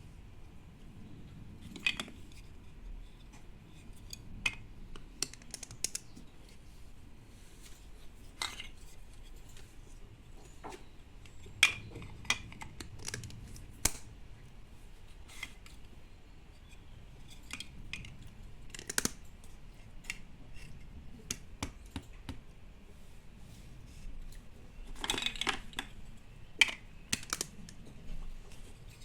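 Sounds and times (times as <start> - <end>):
plastic toys clicking and clacking: 1.6 - 2.5, 4.0 - 6.3, 11.2 - 14.1, 17.3 - 20.7, 24.8 - 26.0, 26.6 - 28.0.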